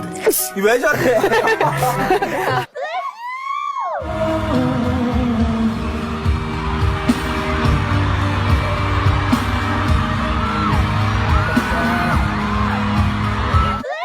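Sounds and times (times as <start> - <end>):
pop music with beat and bass: 4.0 - 14.0.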